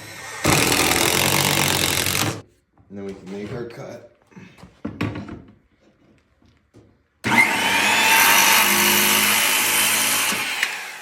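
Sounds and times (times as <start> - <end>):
circular saw cutting wood: 0.0 - 2.4, 7.2 - 11.0.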